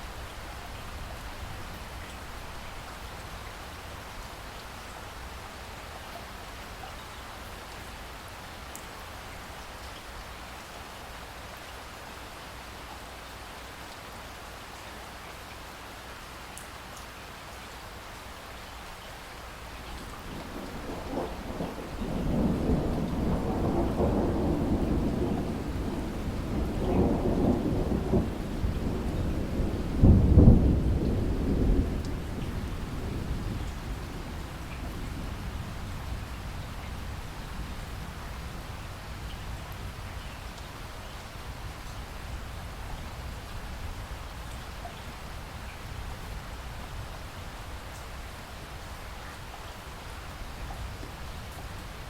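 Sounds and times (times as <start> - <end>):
steady rain: 0.0 - 52.0
thunder rumbling: 20.2 - 40.0.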